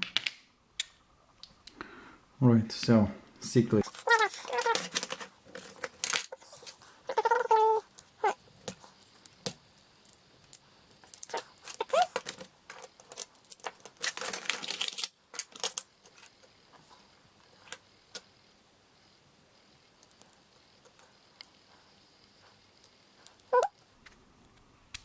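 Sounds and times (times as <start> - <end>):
metal parts rattling: 3.9 - 6.7.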